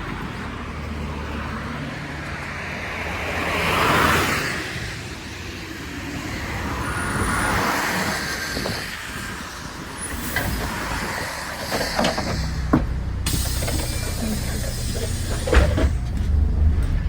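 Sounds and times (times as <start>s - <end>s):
passing traffic: 0.0s - 17.0s
heavy vehicle engine rumble: 5.0s - 17.0s.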